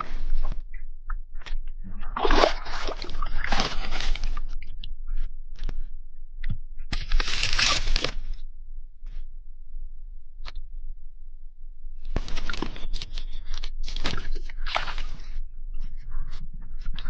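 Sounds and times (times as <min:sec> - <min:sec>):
crunching rustling handling noise: 0:07.0 - 0:08.2.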